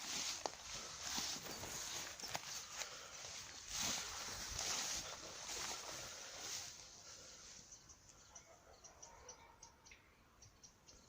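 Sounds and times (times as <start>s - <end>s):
birds chirping faintly: 0.0s - 11.0s.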